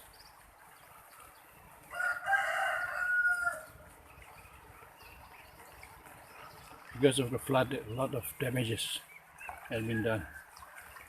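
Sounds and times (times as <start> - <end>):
rooster crowing: 1.9 - 3.7.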